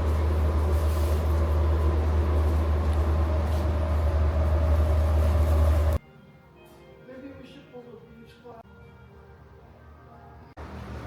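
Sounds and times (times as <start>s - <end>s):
furnaces and fans rumbling: 0.0s - 6.0s, 10.6s - 11.0s.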